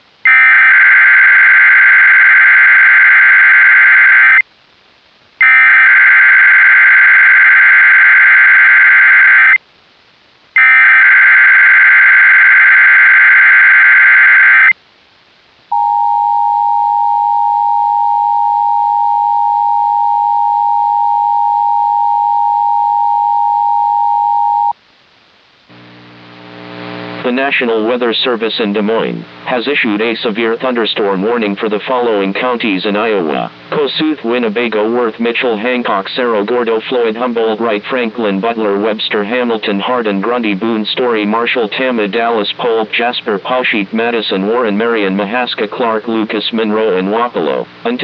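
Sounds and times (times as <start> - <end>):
harsh dual tone attention signal: 0.3 - 4.4, 5.4 - 9.6, 10.6 - 14.7, 15.7 - 24.8.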